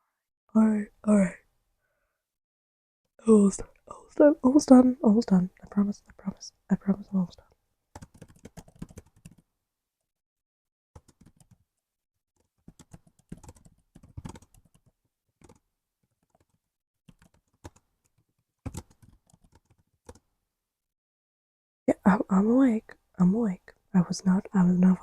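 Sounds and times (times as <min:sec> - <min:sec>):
laptop keyboard typing: 0:08.0 - 0:09.4, 0:11.0 - 0:11.6, 0:12.4 - 0:20.3.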